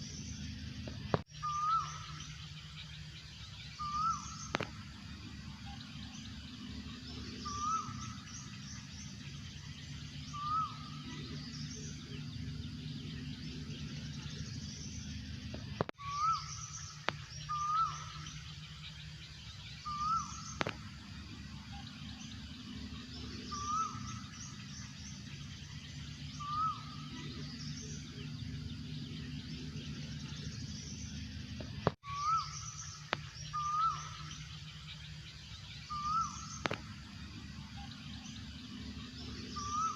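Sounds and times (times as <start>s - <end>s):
steady low hum: 0.0s - 39.9s
high bird chirps: 21.6s - 39.9s.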